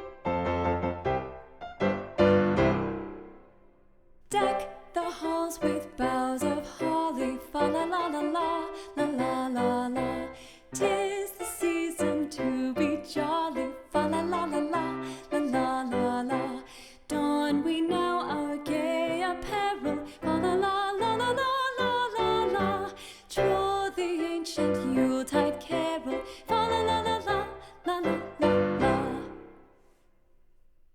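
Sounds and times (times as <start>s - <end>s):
background music: 17.5s - 29.9s.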